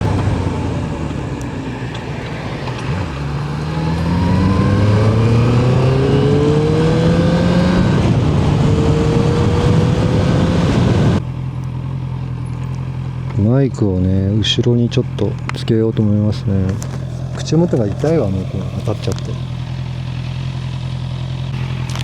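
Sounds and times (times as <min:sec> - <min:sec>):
wind noise: 0:00.0 - 0:11.2
motorcycle engine accelerating: 0:00.0 - 0:22.0.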